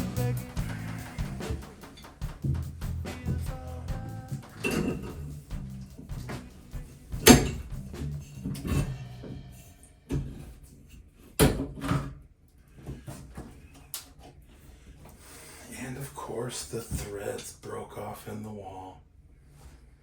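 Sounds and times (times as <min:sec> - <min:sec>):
background music: 0:00.0 - 0:10.1
loud strikes: 0:00.0 - 0:10.2.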